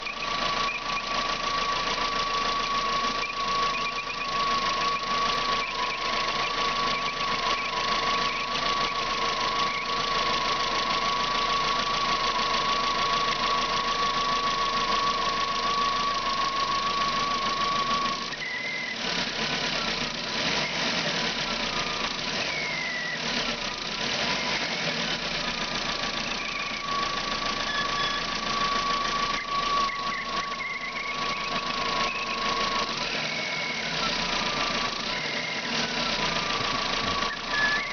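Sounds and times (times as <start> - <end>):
car engine running: 0.0 - 37.9
water pump whistle: 26.2 - 37.9.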